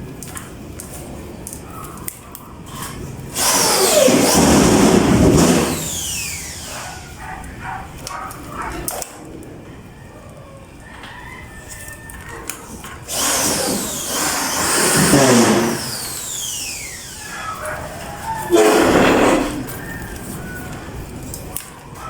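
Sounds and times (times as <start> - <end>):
power tool motor whining: 3.3 - 7.2, 13.0 - 19.8.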